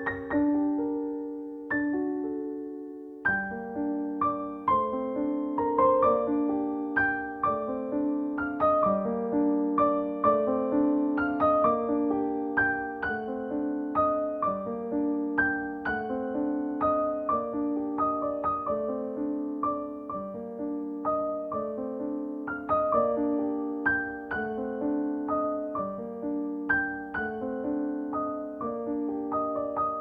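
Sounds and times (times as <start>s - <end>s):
soft piano music: 0.0s - 30.0s.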